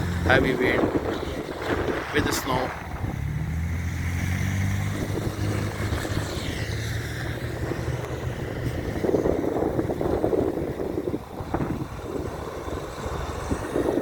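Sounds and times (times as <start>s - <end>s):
vehicle engine humming: 0.0s - 14.0s
wind buffeting microphone: 0.0s - 14.0s
passing vehicle hiss: 0.8s - 14.0s.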